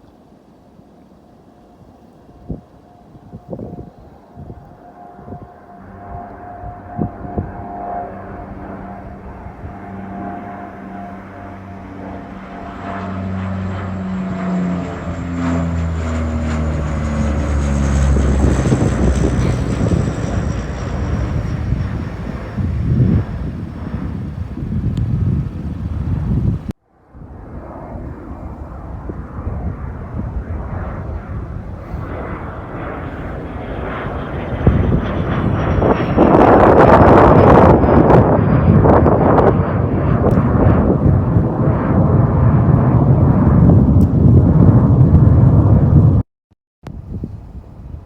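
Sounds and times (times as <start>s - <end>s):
turboprop aircraft droning: 1.4s - 46.2s
jet engines roaring: 1.8s - 46.2s.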